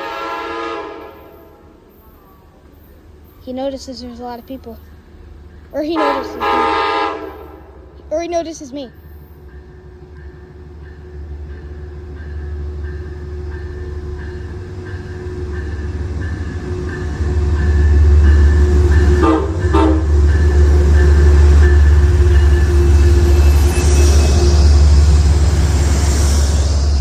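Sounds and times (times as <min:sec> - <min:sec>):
train horn blasts: 0:00.0 - 0:01.8, 0:06.0 - 0:08.0, 0:18.6 - 0:25.1
diesel locomotive rumble: 0:00.0 - 0:27.0.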